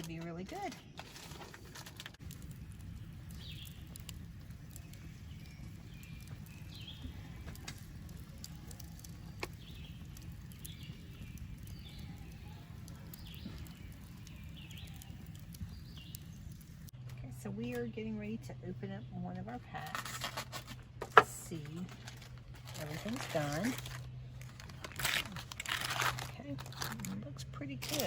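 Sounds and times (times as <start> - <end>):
campfire crackling and popping: 0.0 - 28.0
low steady rumble: 0.0 - 28.0
bird chirps: 2.9 - 7.6, 9.1 - 16.6.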